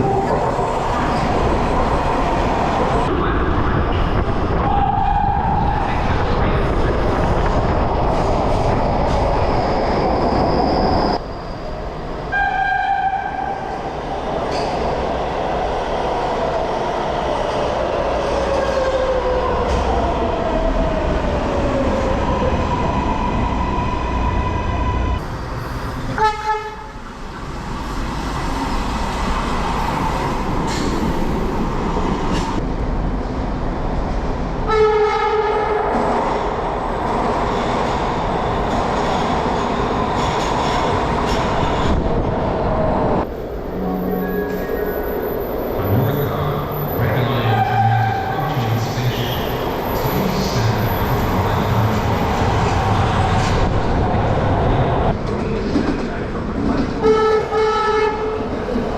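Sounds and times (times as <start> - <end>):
trains running on track: 0.0 - 58.9
train horn blasts: 12.3 - 13.5, 26.2 - 27.0, 34.7 - 35.8, 57.0 - 58.4.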